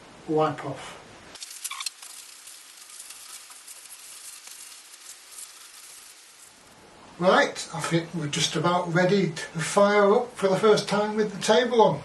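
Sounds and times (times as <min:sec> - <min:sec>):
paper rubbing on metal table: 0:01.4 - 0:06.6.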